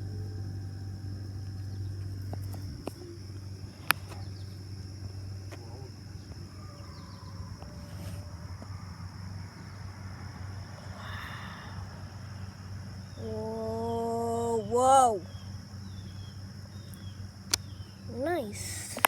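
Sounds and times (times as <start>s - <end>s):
cicadas droning: 0.0s - 19.0s
sharp click: 16.9s - 17.7s.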